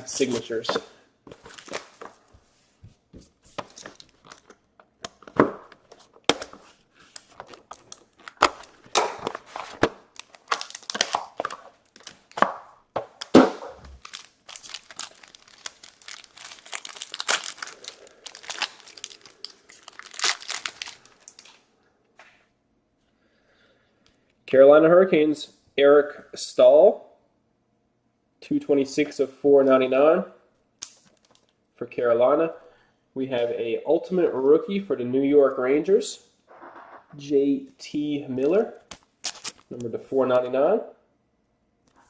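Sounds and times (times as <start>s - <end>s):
plastic wrapping crinkling and tearing: 1.4s - 2.2s, 3.6s - 5.2s, 5.9s - 12.4s, 13.1s - 21.7s, 30.8s - 31.6s, 38.4s - 39.9s.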